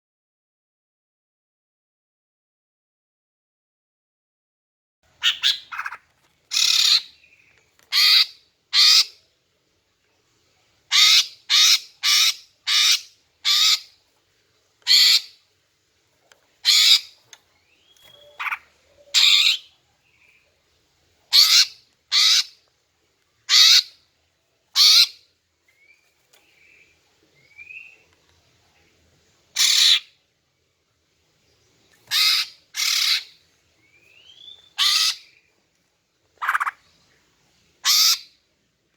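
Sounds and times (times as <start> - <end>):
bird giving harsh rasping calls: 5.2 - 7.1, 7.9 - 9.2, 10.9 - 14.0, 14.9 - 15.4, 16.6 - 17.2, 18.2 - 19.7, 21.3 - 22.6, 23.5 - 24.0, 24.8 - 25.2, 29.6 - 30.1, 32.1 - 33.4, 34.4 - 35.3, 36.4 - 36.8, 37.8 - 38.4
faint whistled bird notes: 17.7 - 19.2, 33.8 - 34.8.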